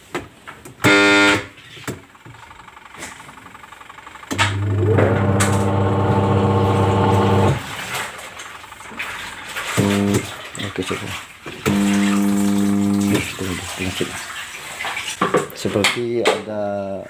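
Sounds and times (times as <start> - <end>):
washing machine motor humming: 4.2 - 14.3.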